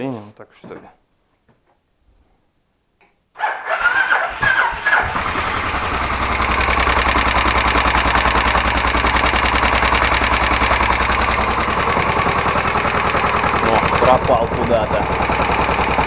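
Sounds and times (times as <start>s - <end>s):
electric starter whining: 3.7s - 16.0s
motorcycle engine idling: 4.5s - 16.0s.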